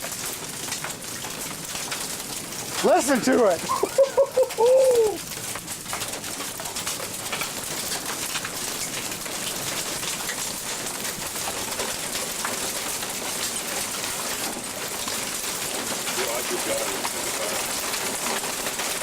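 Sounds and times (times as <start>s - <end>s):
rain falling: 0.0s - 19.0s
ticks of raindrops: 0.0s - 19.0s.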